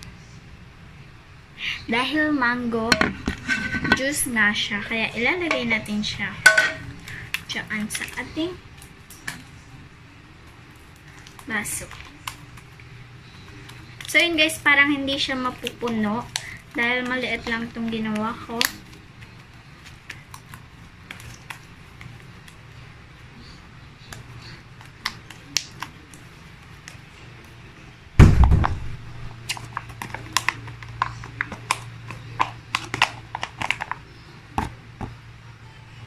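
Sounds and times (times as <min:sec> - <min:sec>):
heavy thump: 0:28.2 - 0:28.9.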